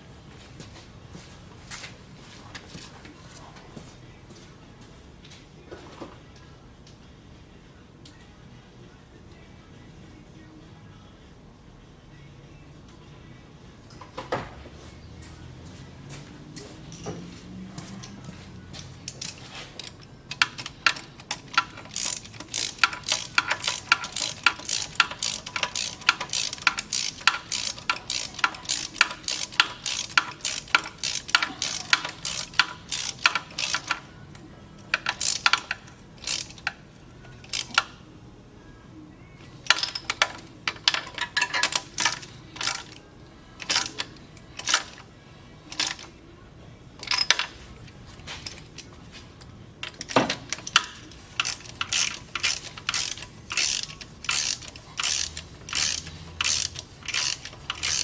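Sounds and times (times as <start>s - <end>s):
sharp metallic clicks and clinks: 18.0s - 37.9s, 39.7s - 43.0s, 43.6s - 45.0s, 47.0s - 58.0s.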